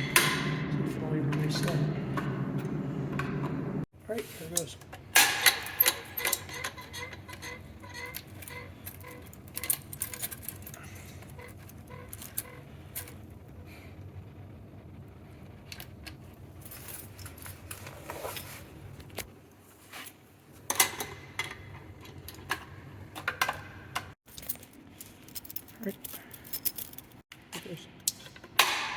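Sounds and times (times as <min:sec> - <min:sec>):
low steady hum: 0:00.0 - 0:28.4
keys jangling: 0:05.7 - 0:13.1, 0:24.3 - 0:27.2.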